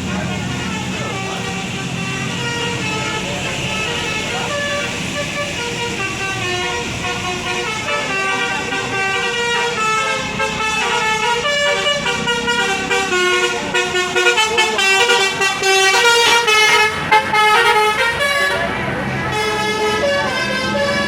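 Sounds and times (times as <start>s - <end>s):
multi-tone bus horn melody: 0.0s - 21.0s.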